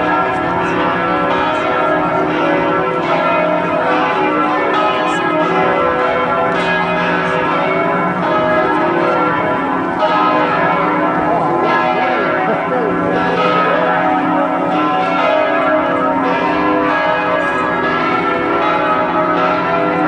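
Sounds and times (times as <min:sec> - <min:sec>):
church bells pealing: 0:00.0 - 0:20.0.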